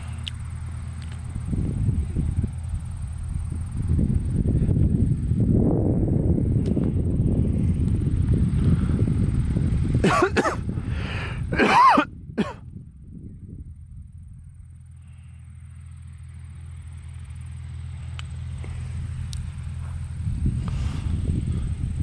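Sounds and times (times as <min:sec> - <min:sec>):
low rumbling noise: 0:00.0 - 0:22.0
steady low hum: 0:00.0 - 0:22.0
person clearing throat and coughing: 0:10.0 - 0:10.7, 0:11.5 - 0:12.6.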